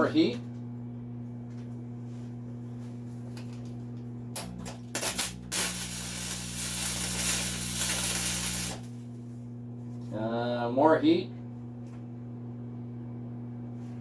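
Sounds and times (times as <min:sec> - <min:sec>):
welder machine hum: 0:03.4 - 0:09.9
welding arc sputtering and crackling: 0:04.4 - 0:09.2.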